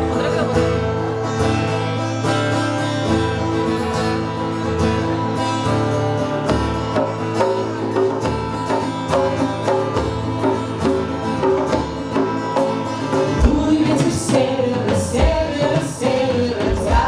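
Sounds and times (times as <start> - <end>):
bass line: 0.0 - 6.3
guitars: 0.0 - 17.0
drum and percussion hits: 6.5 - 17.0.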